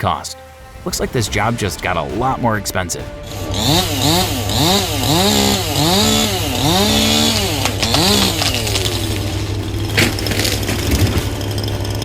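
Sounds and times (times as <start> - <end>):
chainsaw engine revving: 3.1 - 12.0.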